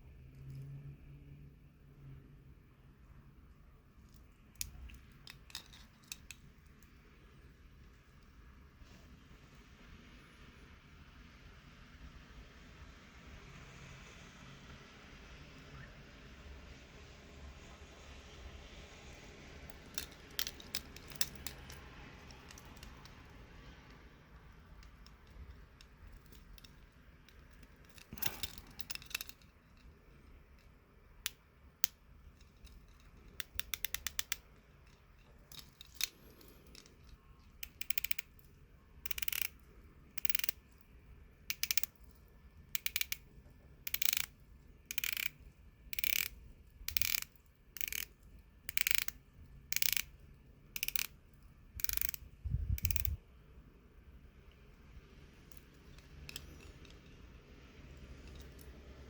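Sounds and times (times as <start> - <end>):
watch bezel ratcheting clicks: 4.6 - 6.5, 19.7 - 23.4, 24.4 - 53.2, 55.5 - 57.3.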